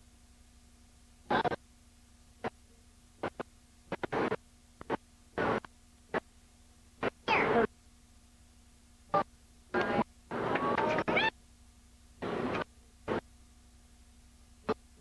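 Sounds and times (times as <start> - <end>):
electrical hum: 0.0 - 15.0
crackling bursts and clicks: 1.3 - 1.6, 3.2 - 6.3, 7.0 - 7.7, 9.1 - 11.3, 12.2 - 13.3.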